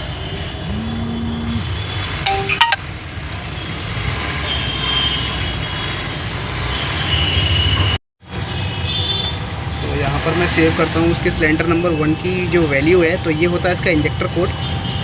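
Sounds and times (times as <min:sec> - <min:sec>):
road traffic rumble: 0:00.0 - 0:15.0
horn-like tone: 0:00.6 - 0:01.7.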